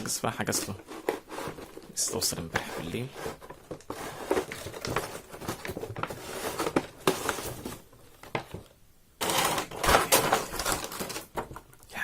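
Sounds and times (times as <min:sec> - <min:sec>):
cardboard box being handled: 0:00.4 - 0:08.6.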